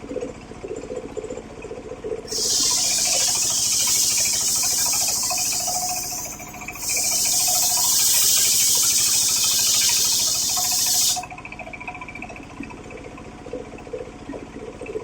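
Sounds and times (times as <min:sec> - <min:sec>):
circular saw blade cutting wood: 0:02.3 - 0:11.3
saw drive low pulse: 0:02.3 - 0:11.3.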